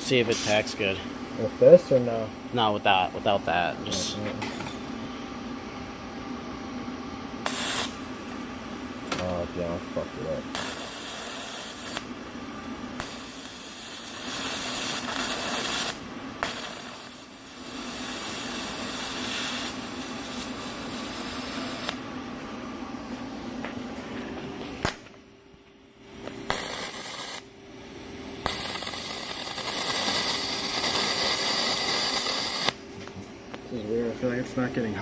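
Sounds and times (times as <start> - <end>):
welding arc hissing and buzzing: 0.0 - 5.1, 7.4 - 25.4, 26.0 - 35.0.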